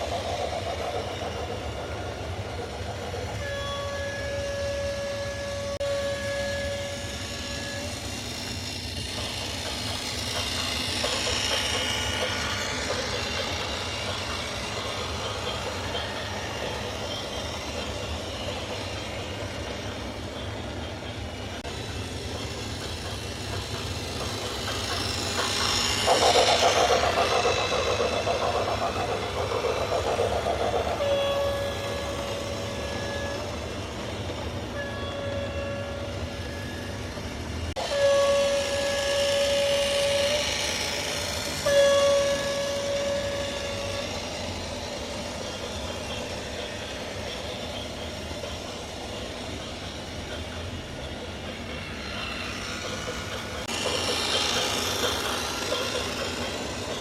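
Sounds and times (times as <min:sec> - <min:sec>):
train rumble: 0:00.0 - 0:57.0
train horn blasts: 0:03.4 - 0:08.0, 0:30.9 - 0:33.5, 0:34.8 - 0:36.8, 0:37.8 - 0:44.3.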